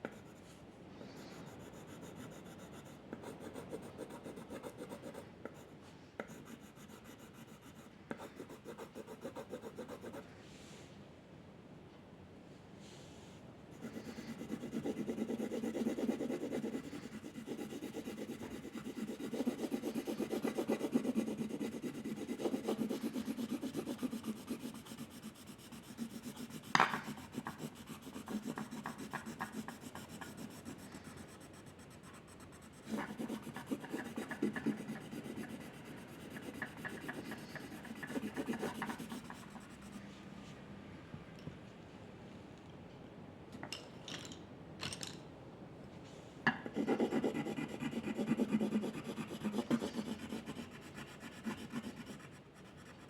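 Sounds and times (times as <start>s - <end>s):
pencil scratching on paper: 1.2s - 10.2s, 13.8s - 40.1s, 46.8s - 53.0s.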